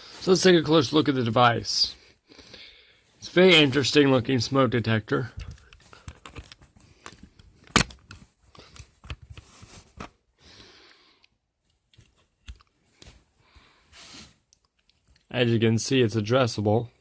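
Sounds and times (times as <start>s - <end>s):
soft rustles: 5.1s - 10.3s, 11.6s - 15.3s.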